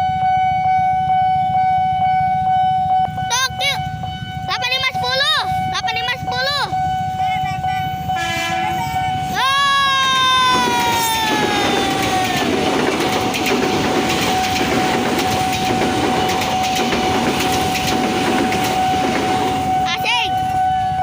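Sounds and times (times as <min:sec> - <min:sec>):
steady high tone: 0:01.1 - 0:17.9
train horn: 0:06.7 - 0:09.4
wheels on rails clicking: 0:10.6 - 0:19.6.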